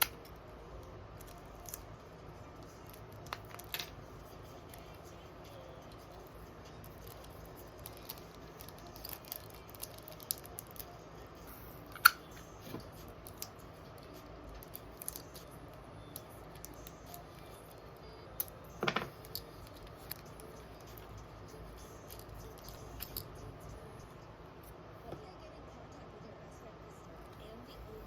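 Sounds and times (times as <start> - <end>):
objects clicking and tapping on desk: 18.8 - 20.3.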